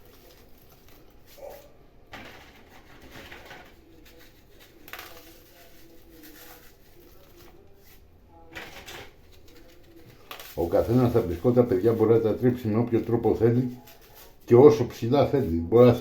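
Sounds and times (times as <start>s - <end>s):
biscuits snapping and crumbling: 0.0s - 7.9s, 8.5s - 12.4s.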